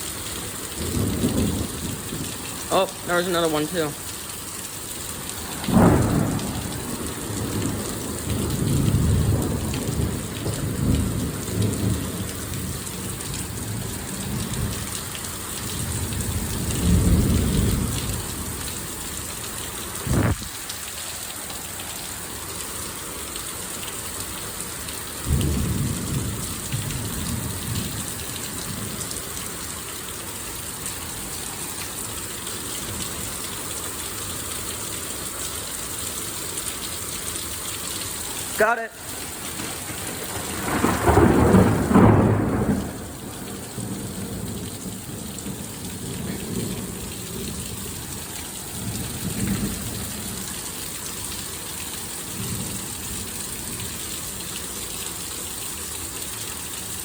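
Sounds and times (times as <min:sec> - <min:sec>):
heavy rain hissing: 0:00.0 - 0:57.0
thunder clap and rumble: 0:00.8 - 0:02.4, 0:05.4 - 0:14.8, 0:15.7 - 0:18.6, 0:20.0 - 0:20.6, 0:25.3 - 0:29.0, 0:39.2 - 0:47.8, 0:48.8 - 0:50.4.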